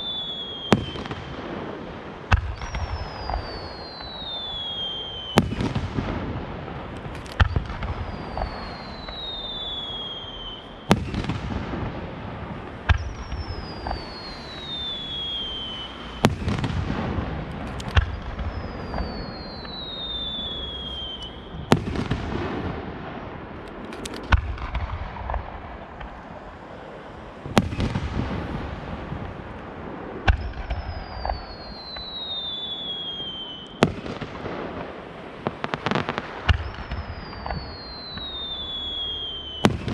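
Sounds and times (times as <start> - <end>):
firework shell whistle: 0.0 - 1.4, 2.4 - 5.8, 7.0 - 11.2, 12.9 - 16.8, 17.5 - 22.1, 30.3 - 33.9, 35.6 - 39.9
firework bangs: 0.0 - 39.9.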